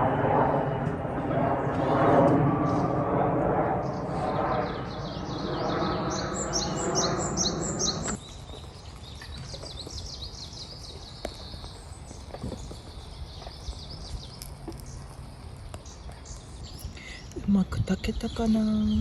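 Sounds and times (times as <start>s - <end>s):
small birds chirping and trilling: 3.9s - 19.0s.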